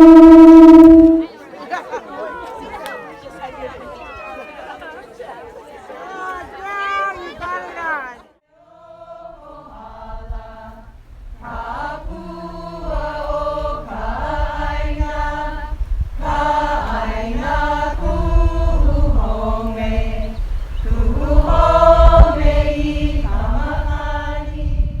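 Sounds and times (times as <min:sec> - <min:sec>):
group chanting: 0:08.6 - 0:10.8, 0:19.2 - 0:24.6.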